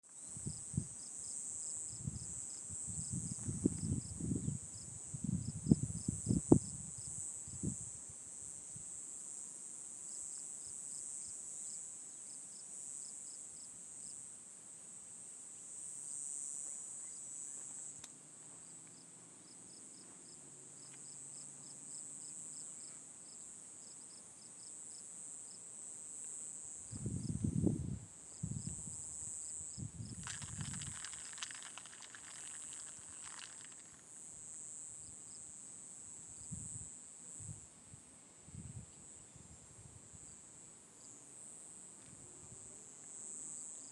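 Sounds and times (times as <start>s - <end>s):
high-pitched insect chorus: 0.2s - 8.8s, 26.7s - 35.4s.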